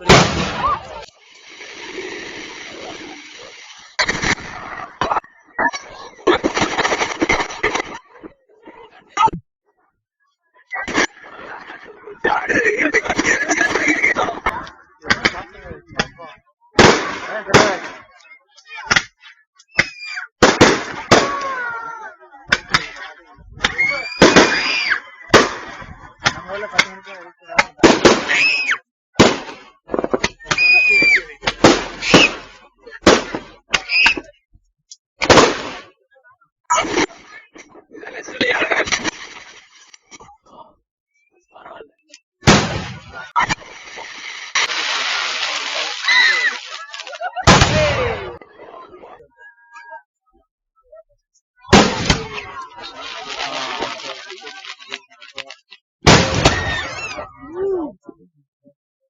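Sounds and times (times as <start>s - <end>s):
fireworks bangs: 0.0s - 5.2s, 6.2s - 8.0s, 16.8s - 18.0s, 20.4s - 21.6s, 23.6s - 25.9s, 27.7s - 28.4s, 29.2s - 34.2s, 35.2s - 35.9s, 42.4s - 48.4s, 51.7s - 57.0s
voices: 0.0s - 28.8s, 35.9s - 58.3s
whistling fireworks gliding down: 23.7s - 25.0s, 30.4s - 31.3s, 32.0s - 32.4s, 43.2s - 47.9s.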